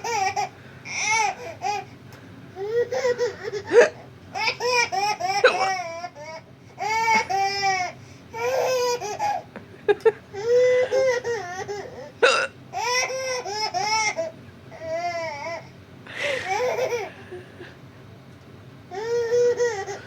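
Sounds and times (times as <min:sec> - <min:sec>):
baby giggling: 0:02.6 - 0:05.9, 0:16.2 - 0:17.3
woman hiccuping: 0:03.7 - 0:04.0, 0:05.4 - 0:05.8, 0:12.2 - 0:12.6.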